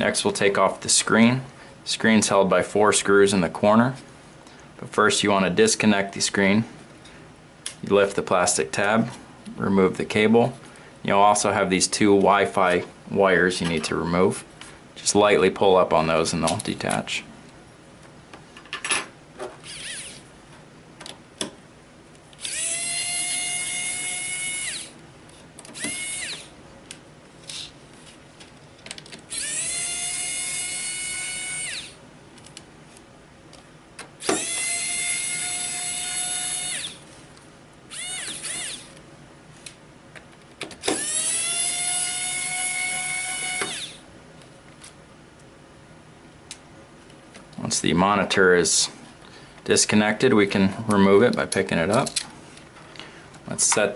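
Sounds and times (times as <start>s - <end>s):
electric screwdriver whining: 19.6s - 20.2s, 22.4s - 25.0s, 25.7s - 26.5s, 29.3s - 32.0s, 34.2s - 37.0s, 37.9s - 38.9s, 40.8s - 44.0s.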